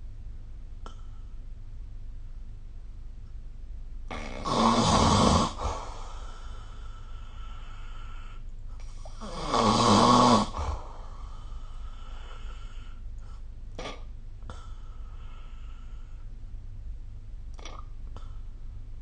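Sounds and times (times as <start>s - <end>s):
faint steady background tone: 0.0s - 19.0s
person snoring: 4.1s - 13.0s.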